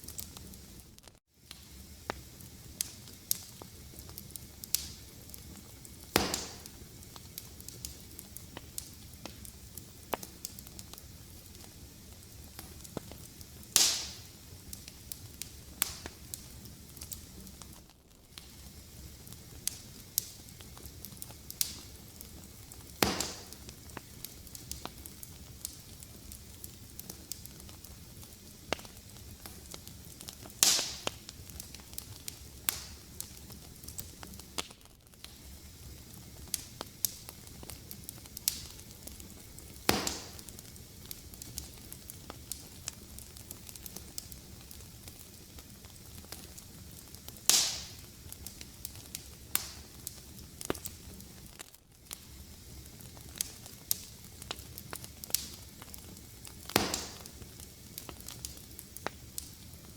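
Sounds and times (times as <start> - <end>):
fire crackling: 0.0 - 59.9
loud sharp pops: 6.1 - 6.8, 13.8 - 14.3, 15.8 - 16.2, 23.0 - 24.1, 30.6 - 31.2, 39.8 - 40.6, 47.5 - 48.1, 56.7 - 57.5.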